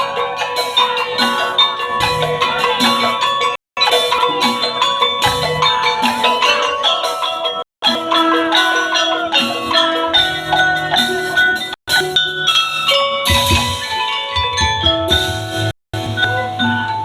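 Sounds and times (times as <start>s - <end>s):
mallet-struck pitched percussion: 0.0s - 17.0s
low drum notes: 13.3s - 17.0s.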